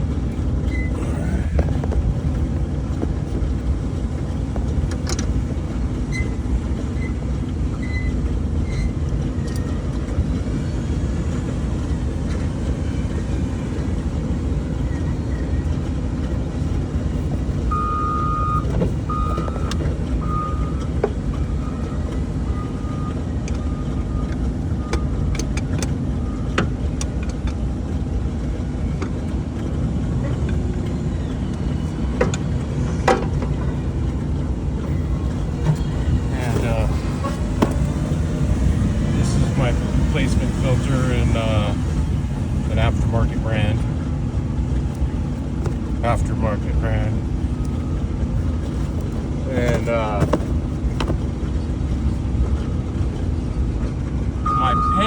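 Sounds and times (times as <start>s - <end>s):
engine running low rumble: 0.0s - 55.0s
faint beeps: 54.4s - 55.0s.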